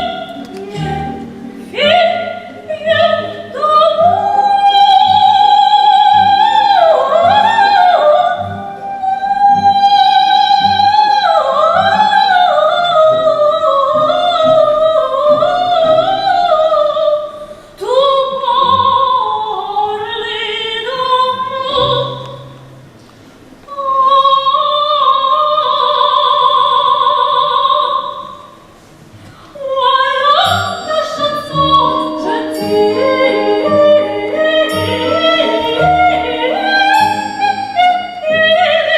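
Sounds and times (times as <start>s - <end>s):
musical accompaniment: 0.0s - 17.0s, 30.3s - 38.9s
operetta singing with vibrato: 0.0s - 22.7s, 29.6s - 38.9s.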